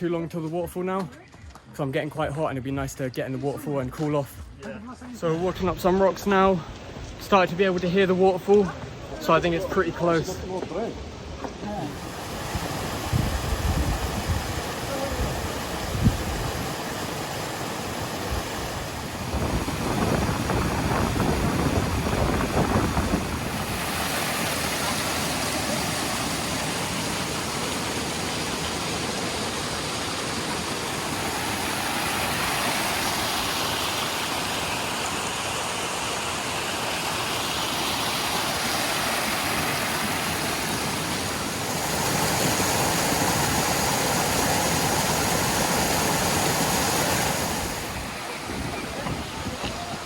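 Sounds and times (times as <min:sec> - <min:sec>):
waterfall rushing: 0:05.4 - 0:50.0.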